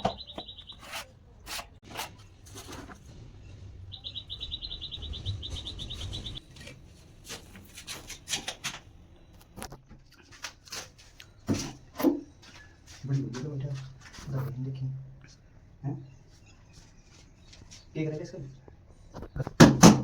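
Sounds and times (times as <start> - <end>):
bird's rapid chirping trill: 0.0 - 1.1, 3.8 - 6.4
low rumble: 2.4 - 6.5.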